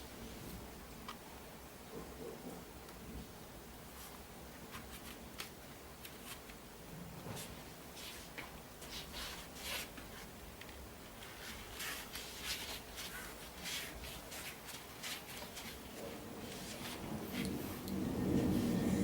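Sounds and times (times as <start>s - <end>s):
rustling and scratching strokes: 7.2s - 10.4s, 11.0s - 19.0s.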